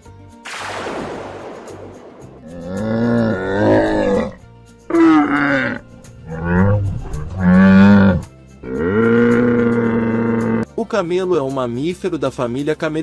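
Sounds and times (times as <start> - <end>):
donkey braying: 2.6 - 10.7.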